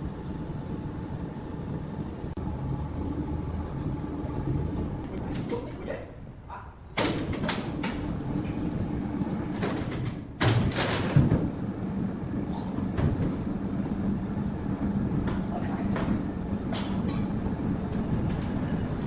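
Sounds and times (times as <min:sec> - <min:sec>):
sawmill machinery humming: 0:00.0 - 0:05.3
machinery knocks and clanks: 0:12.5 - 0:13.6.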